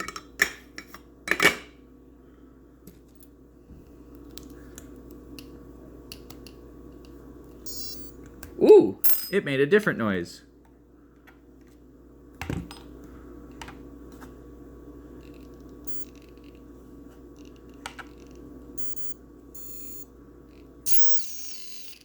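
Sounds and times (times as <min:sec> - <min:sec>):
electrical hum: 0:03.8 - 0:11.2, 0:11.9 - 0:22.0
motor whirring tones: 0:07.7 - 0:08.1, 0:15.9 - 0:16.2, 0:18.8 - 0:20.1, 0:20.9 - 0:22.0
short beeps: 0:07.7 - 0:08.1, 0:15.9 - 0:16.1, 0:18.8 - 0:20.1, 0:20.9 - 0:22.0
power-up click: 0:15.9 - 0:16.1, 0:18.8 - 0:20.0, 0:20.9 - 0:22.0.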